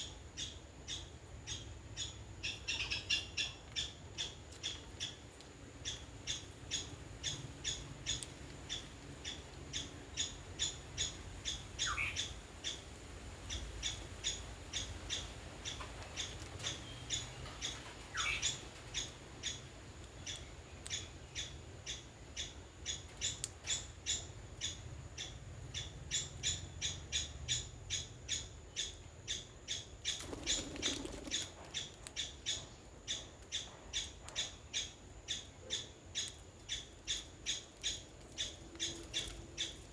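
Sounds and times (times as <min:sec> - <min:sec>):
longer falling bird calls: 0:20.3 - 0:39.9.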